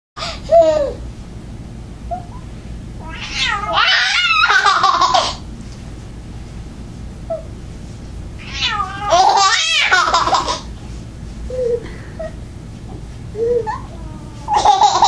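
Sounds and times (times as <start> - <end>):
cat meowing: 3.0 - 4.5, 8.4 - 10.0
toddler squealing and laughing: 13.4 - 15.0.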